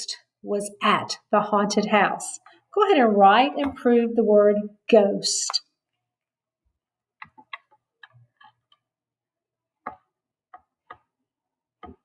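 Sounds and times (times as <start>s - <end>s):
marker writing on whiteboard: 7.2s - 8.8s, 9.8s - 11.1s.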